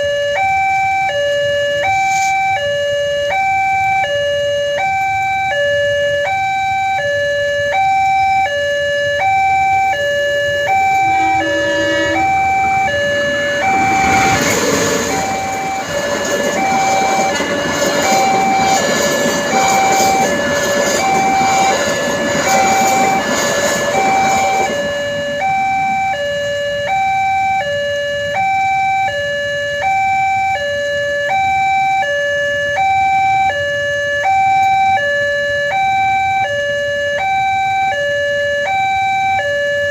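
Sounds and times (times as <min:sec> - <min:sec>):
level crossing two-tone alarm: 0:00.0 - 0:39.9
train rumbling and wheel clatter: 0:10.5 - 0:27.0.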